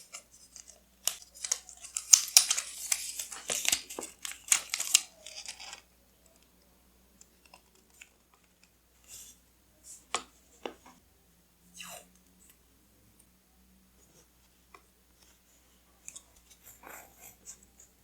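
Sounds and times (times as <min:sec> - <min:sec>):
paper and tape crinkling: 0:00.0 - 0:06.4.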